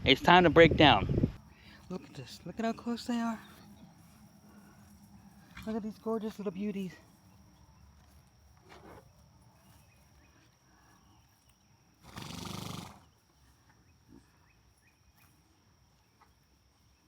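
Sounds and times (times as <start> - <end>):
horse snorting: 12.0 - 13.1.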